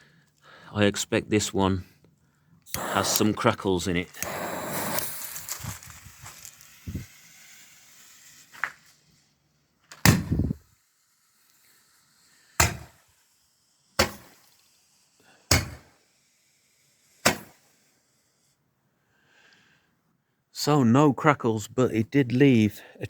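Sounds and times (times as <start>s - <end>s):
roman candle shots: 2.7s - 9.0s, 10.0s - 10.7s
small pop: 9.9s - 10.6s, 12.6s - 13.0s, 14.0s - 14.4s, 15.5s - 15.9s, 17.2s - 17.6s.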